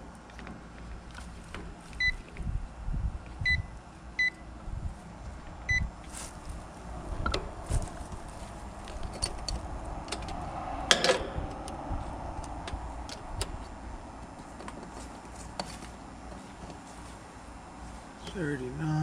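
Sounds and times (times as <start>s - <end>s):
clicks and metallic rattles of tools: 8.8s - 11.8s, 12.4s - 13.8s.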